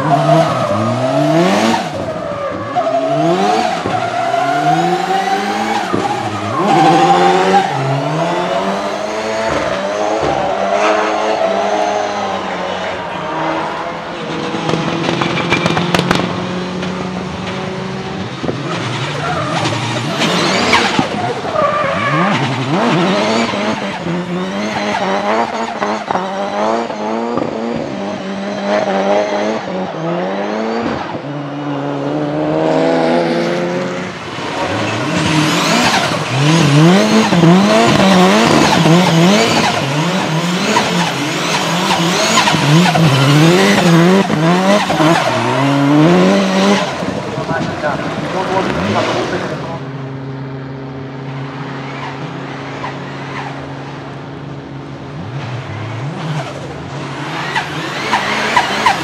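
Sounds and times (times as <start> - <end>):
car engine revving hard: 0.0 - 53.6, 55.2 - 59.0
sharp exhaust pops: 14.6 - 17.6
tyres squealing: 18.6 - 26.1, 34.4 - 49.3.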